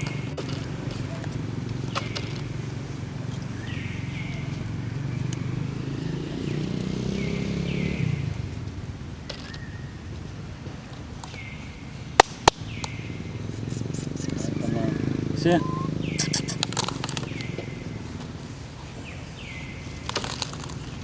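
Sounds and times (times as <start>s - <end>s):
vehicle engine humming: 0.0s - 9.1s, 12.4s - 20.0s
monkeys squeaking: 13.5s - 17.5s.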